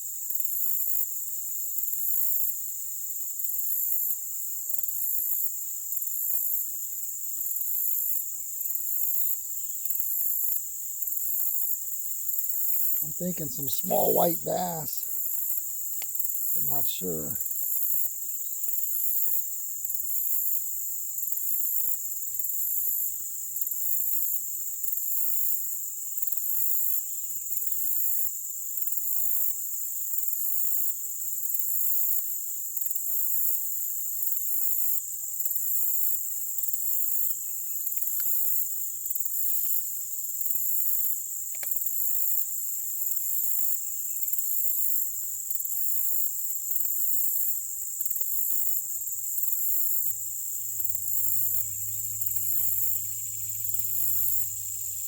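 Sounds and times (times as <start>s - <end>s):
insects buzzing: 49.2s - 55.0s
pulsing insect trill: 50.2s - 55.0s.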